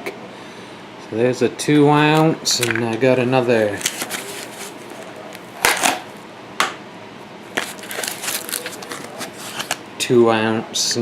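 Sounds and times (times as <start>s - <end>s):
packaging clicking and crinkling: 3.7s - 6.0s, 7.5s - 9.9s.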